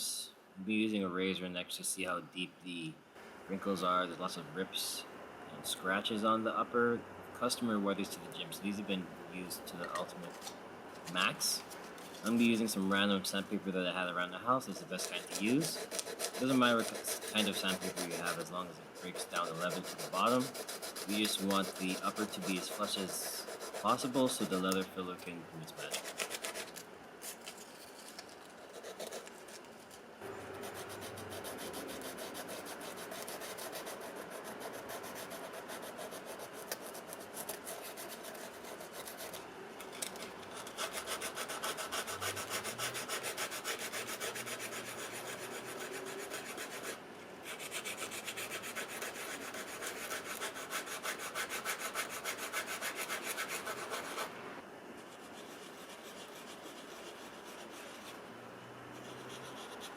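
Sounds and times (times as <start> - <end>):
sandpaper rasping on leather: 14.6 - 24.9, 25.8 - 26.8, 30.6 - 39.4, 40.5 - 54.3, 55.1 - 58.2, 59.0 - 59.9.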